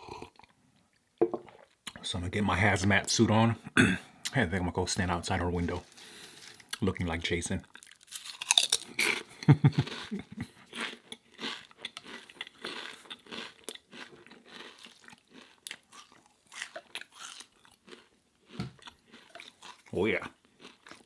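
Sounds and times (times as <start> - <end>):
crunching and chewing crisp snack: 5.4 - 21.0.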